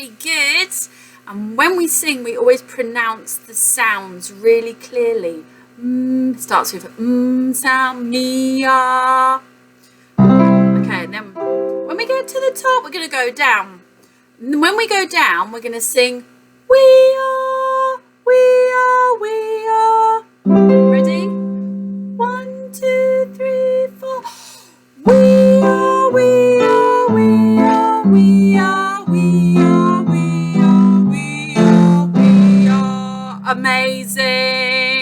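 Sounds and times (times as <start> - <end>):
woman singing vocal warm-up: 5.8 - 9.4, 10.3 - 13.0, 16.7 - 35.0
sustained instrument chords: 10.2 - 12.8, 20.5 - 24.1, 25.1 - 35.0.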